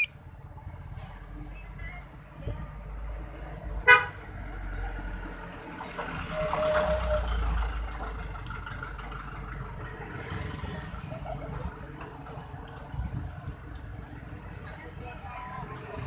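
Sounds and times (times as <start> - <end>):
motor vehicle rumble: 6.8 - 16.0.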